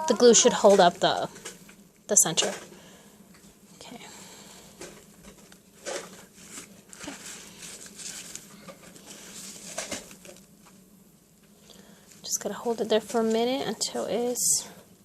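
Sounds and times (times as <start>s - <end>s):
faint steady hum: 0.0s - 15.0s
hands rustling and tapping: 4.8s - 14.2s.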